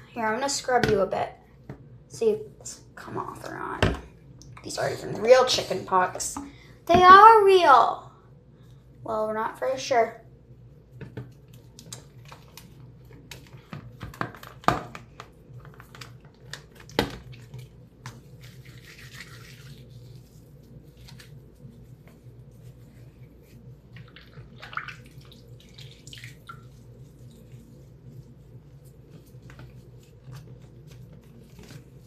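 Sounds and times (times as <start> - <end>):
small wet sounds: 10.2 - 32.0
washcloth scrubbing: 15.4 - 32.0.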